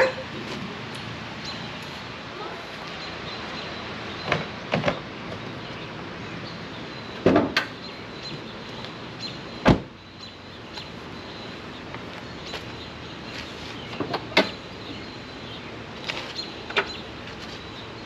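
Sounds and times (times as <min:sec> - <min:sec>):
knocks and clunks: 0:04.2 - 0:05.0, 0:07.2 - 0:07.8.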